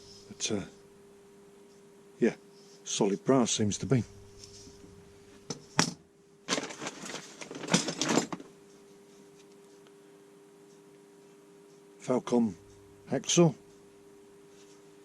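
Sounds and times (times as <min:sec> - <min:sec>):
metal tools knocking and rattling: 0:06.5 - 0:08.4.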